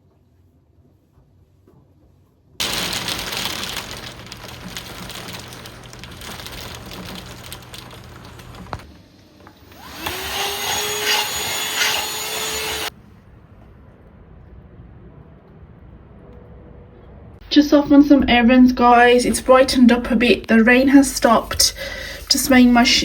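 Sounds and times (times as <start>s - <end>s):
appliance motor blowing air: 9.6s - 12.9s.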